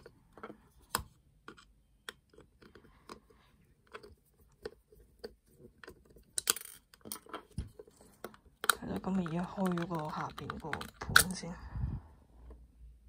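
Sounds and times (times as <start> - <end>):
plastic rattle: 3.8 - 11.5
plastic toy clicks and scrapes: 3.9 - 11.5.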